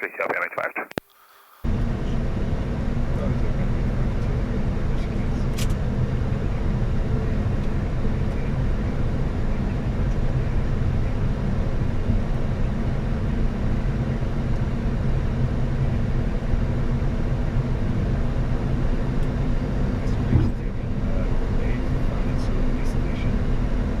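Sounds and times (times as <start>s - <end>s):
steady low drone: 15.8s - 24.0s.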